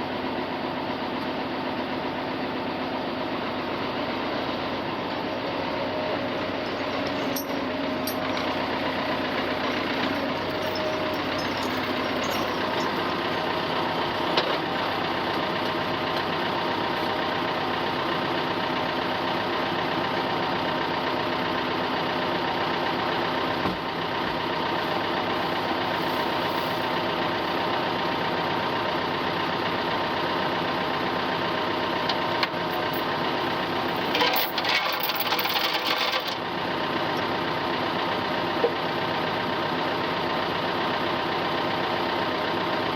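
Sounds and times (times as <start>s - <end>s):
tractor engine running: 0.3s - 42.9s
rattling and clanking: 6.2s - 14.7s, 32.4s - 36.4s.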